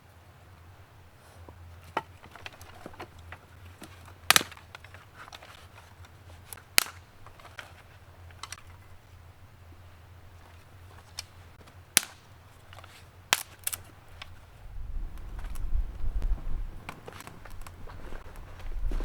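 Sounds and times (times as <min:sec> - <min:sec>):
sharp cracks: 0:04.2 - 0:05.0, 0:06.5 - 0:07.6, 0:11.1 - 0:14.4.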